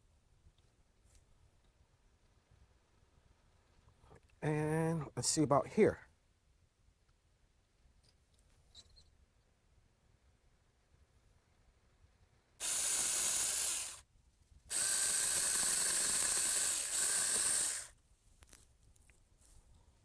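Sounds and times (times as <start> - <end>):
mini electric chainsaw cutting: 12.6 - 14.0, 14.7 - 17.9.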